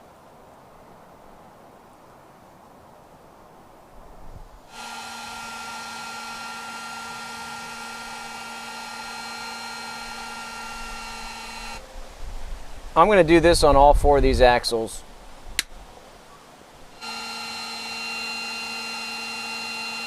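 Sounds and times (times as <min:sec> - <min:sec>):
heat gun whining and hissing: 0:04.7 - 0:11.8, 0:16.9 - 0:20.0.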